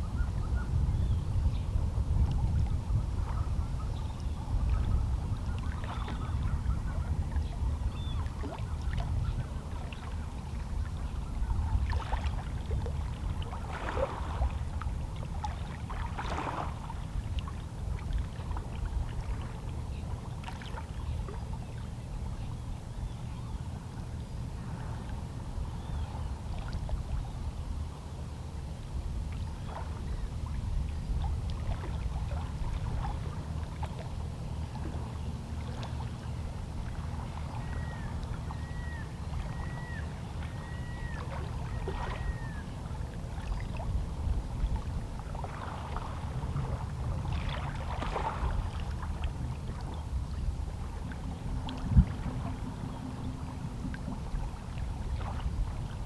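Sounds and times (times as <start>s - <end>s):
small water splashes: 11.7s - 21.8s, 30.9s - 56.0s.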